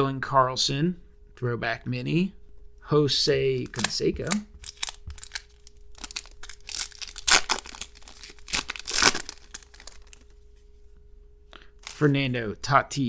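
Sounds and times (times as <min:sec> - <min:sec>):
cards and wrapper crinkling: 0:03.6 - 0:10.4, 0:11.8 - 0:12.2.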